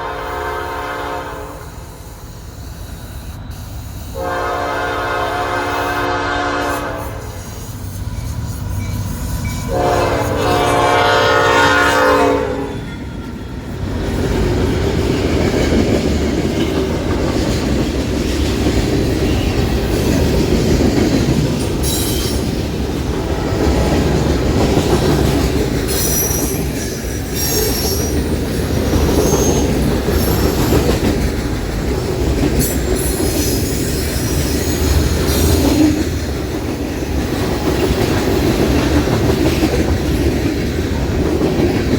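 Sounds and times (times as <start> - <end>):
locomotive air horn blasts: 0.0 - 2.2, 4.1 - 7.6, 9.7 - 12.8
train wheels rumbling and clacking: 0.0 - 41.9
high wheel squeals: 7.1 - 10.1, 25.9 - 30.9.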